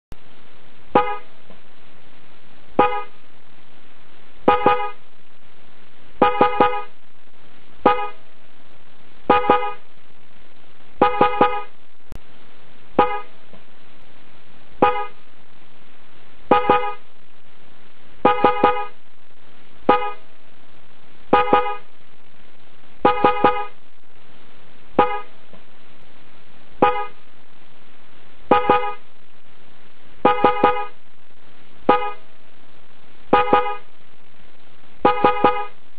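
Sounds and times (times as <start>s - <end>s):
steady background hiss: 0.1s - 35.9s
car horn blasts: 1.0s - 1.3s, 2.8s - 3.2s, 4.5s - 5.0s, 6.2s - 6.9s, 7.9s - 8.2s, 9.3s - 9.8s, 11.0s - 11.7s, 13.0s - 13.3s, 14.8s - 15.2s, 16.5s - 17.0s, 18.3s - 19.0s, 19.9s - 20.2s, 21.4s - 21.8s, 23.0s - 23.8s, 25.0s - 25.3s, 26.8s - 27.2s, 28.5s - 29.0s, 30.2s - 31.0s, 31.9s - 32.2s, 33.3s - 33.9s, 35.0s - 35.8s.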